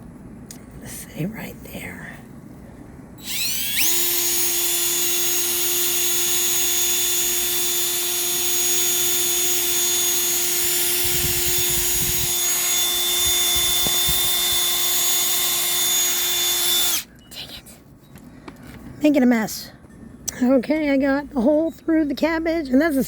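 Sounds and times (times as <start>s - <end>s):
low rumbles of drill bit: 3.2s - 17.1s
power drill motor whine: 3.2s - 17.1s.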